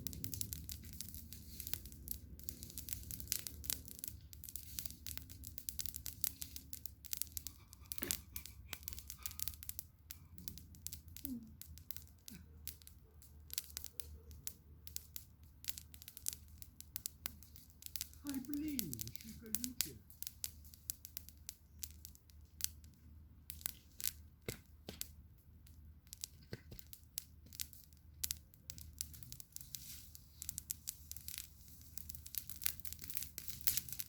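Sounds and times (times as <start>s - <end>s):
low steady rumble: 0.0s - 12.2s
campfire crackling and popping: 0.0s - 34.0s.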